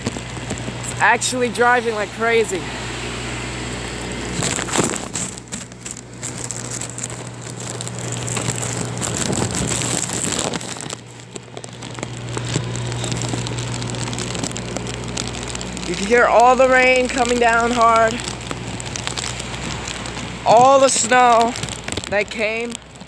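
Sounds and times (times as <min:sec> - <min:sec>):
drops crackling on surfaces: 0:00.0 - 0:23.0
heavy rain in gusting wind: 0:00.0 - 0:23.0
steady low hum: 0:00.0 - 0:23.0.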